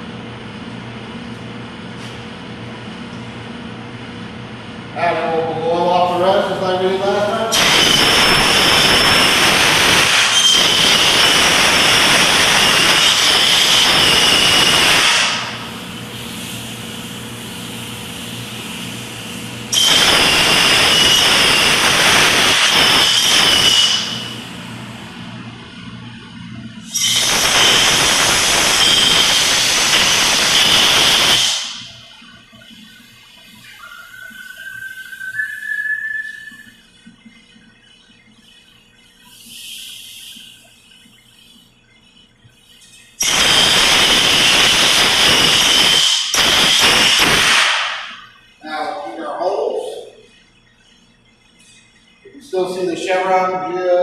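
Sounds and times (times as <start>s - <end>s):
steady low hum: 0.0s - 10.2s, 11.1s - 46.4s, 47.9s - 54.0s
air blow gun blasts with whistle: 7.5s - 16.0s, 19.7s - 24.4s, 26.9s - 33.0s, 33.6s - 36.8s, 42.6s - 48.4s.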